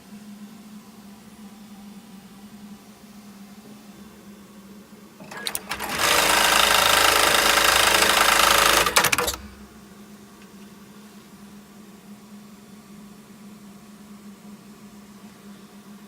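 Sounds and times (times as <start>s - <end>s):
rapid machine stitching: 5.2s - 9.7s
sewing machine clicks: 5.2s - 9.8s.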